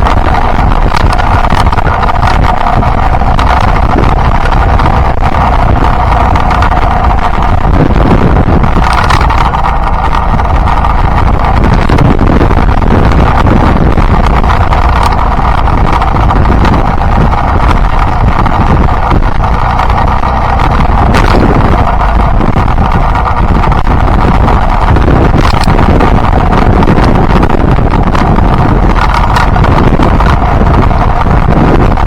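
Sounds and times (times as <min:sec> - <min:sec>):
motorcycle engine running: 0:00.0 - 0:32.0
wind noise on microphone: 0:00.0 - 0:32.0.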